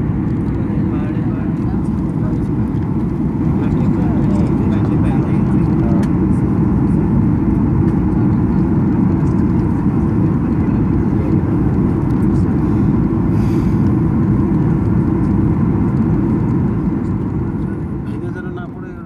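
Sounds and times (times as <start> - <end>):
airliner cabin noise: 0.0 - 19.0.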